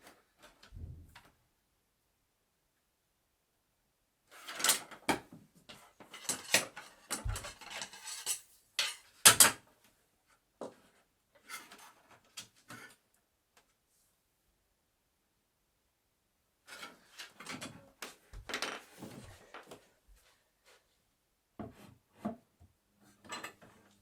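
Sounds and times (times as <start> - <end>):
wood knocks and clatters: 6.0 - 8.1.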